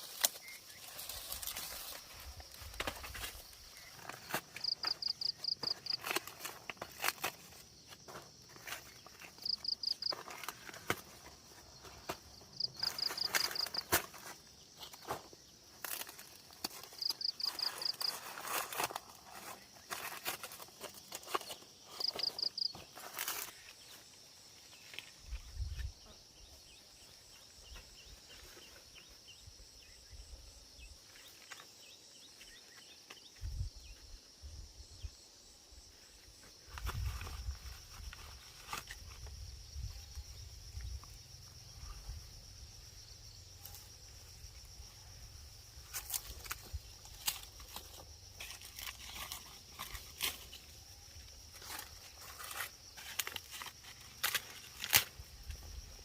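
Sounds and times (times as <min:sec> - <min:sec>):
footsteps through plants: 0:00.0 - 0:29.4, 0:36.3 - 0:41.0.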